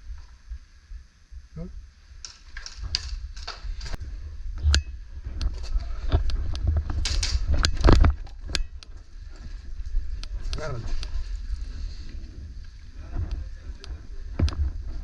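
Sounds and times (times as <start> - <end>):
low rumble: 0.0 - 15.0
sharp clicks and knocks: 4.6 - 9.0, 13.2 - 14.7.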